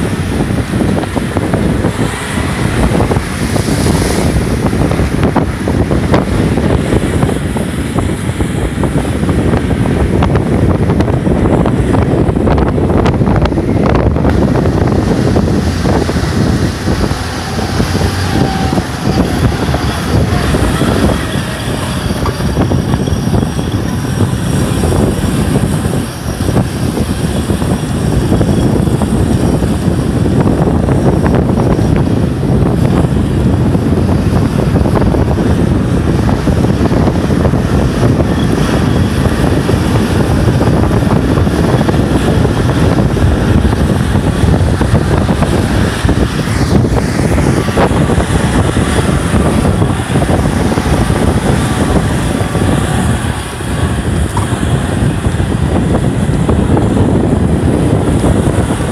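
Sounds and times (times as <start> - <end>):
off-road vehicle engine driving: 0.0 - 58.9.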